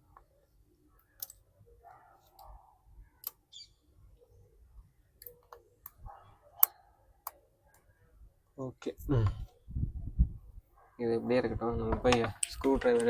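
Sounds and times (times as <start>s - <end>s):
faint handling noise: 11.9s - 13.0s.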